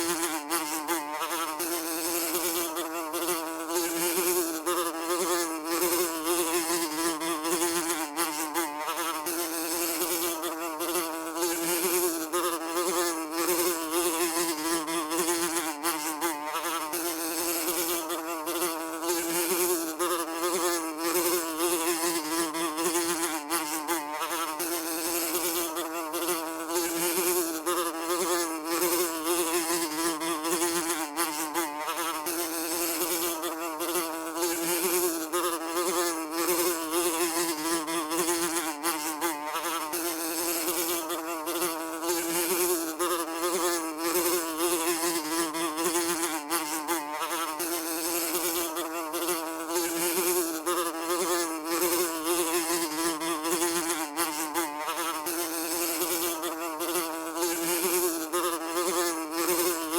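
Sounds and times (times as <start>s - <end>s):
housefly buzzing: 0.0s - 59.9s.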